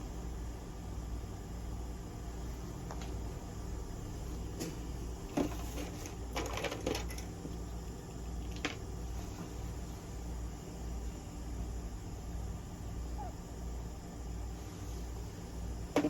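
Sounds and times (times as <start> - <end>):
steady low hum: 0.0 - 16.0
small objects clicking and clattering: 6.3 - 7.4.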